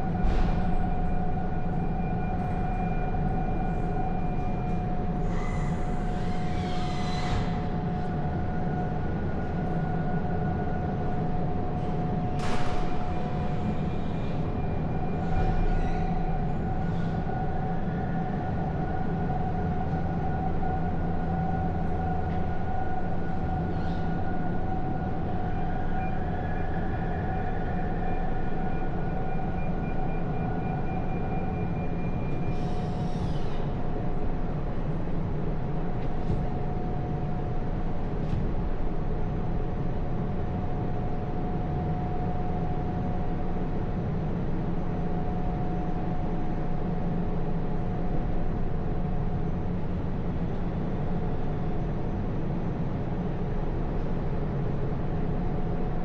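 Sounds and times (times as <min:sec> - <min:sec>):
constant whine: 0:00.0 - 0:56.0.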